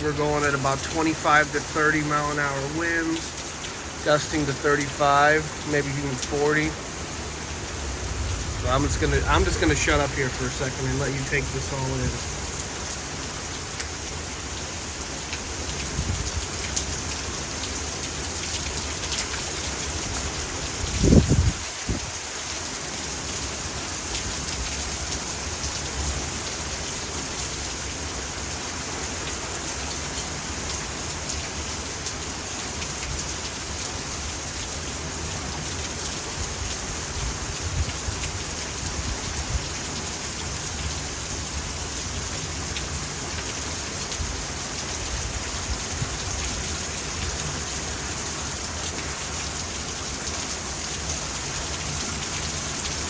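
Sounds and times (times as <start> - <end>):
heavy rain pouring: 0.0 - 53.0
strong gusting wind: 6.2 - 12.5, 15.8 - 16.6, 20.5 - 22.3.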